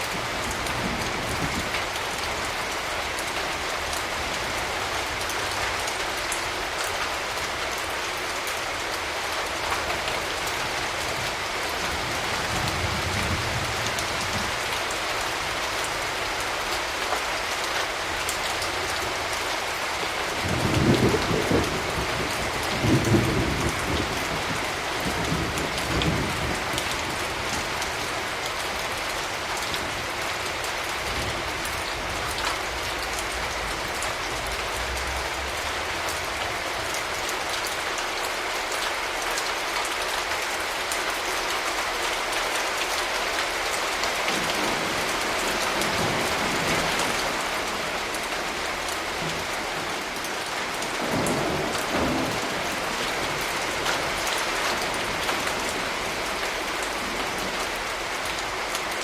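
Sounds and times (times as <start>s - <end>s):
steady rain falling: 0.0s - 59.0s
thunder rumbling: 20.4s - 27.8s, 31.0s - 37.3s.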